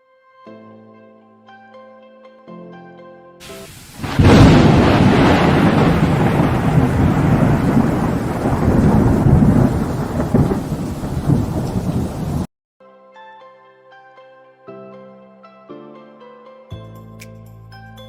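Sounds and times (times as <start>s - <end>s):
soft music with held notes: 0.0s - 3.7s, 12.8s - 18.0s
steady rain: 3.4s - 12.5s
rolling thunder: 3.6s - 12.5s.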